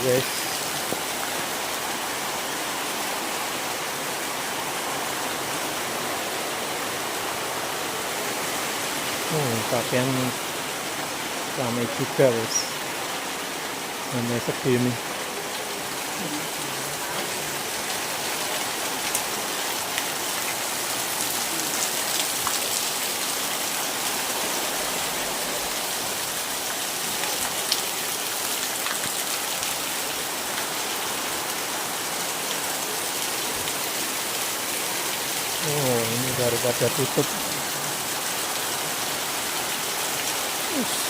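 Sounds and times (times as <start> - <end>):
steady rain hiss: 0.0 - 41.0.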